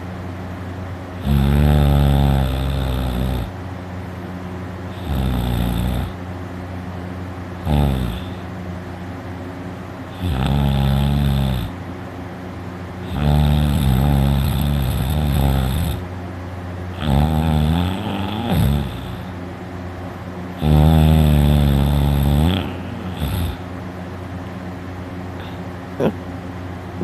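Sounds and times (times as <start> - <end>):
man snoring loudly: 1.2 - 3.6, 4.9 - 6.2, 7.6 - 8.5, 10.1 - 11.8, 13.0 - 16.1, 16.9 - 19.4, 20.6 - 23.7.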